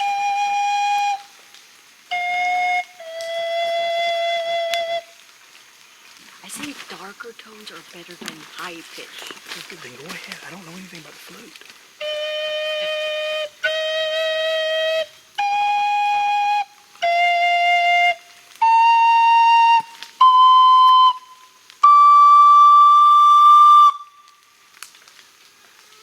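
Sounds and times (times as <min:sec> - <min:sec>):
flute held notes: 0:00.0 - 0:01.4, 0:02.1 - 0:05.2, 0:12.0 - 0:24.5.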